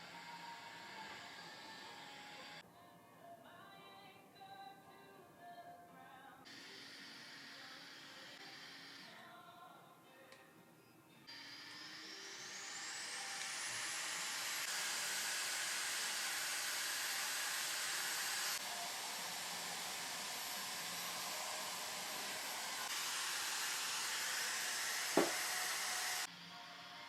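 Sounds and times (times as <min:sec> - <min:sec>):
portable fan running: 0:00.0 - 0:02.6, 0:11.3 - 0:26.3.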